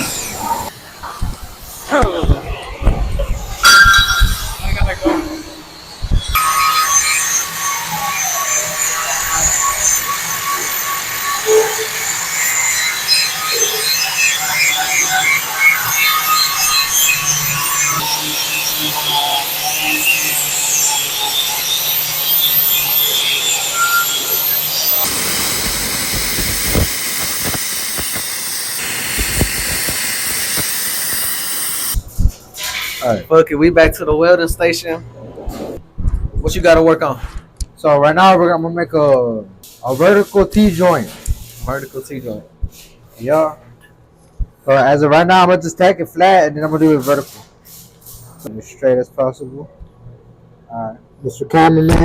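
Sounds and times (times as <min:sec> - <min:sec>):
cutting torch hissing: 0:00.0 - 0:00.7, 0:19.7 - 0:32.0
angle grinder grinding steel: 0:06.4 - 0:32.0.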